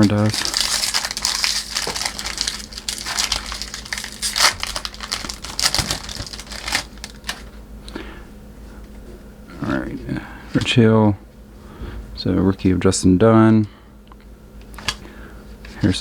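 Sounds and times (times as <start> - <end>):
foil wrapper tearing and crinkling: 0.0 - 7.5.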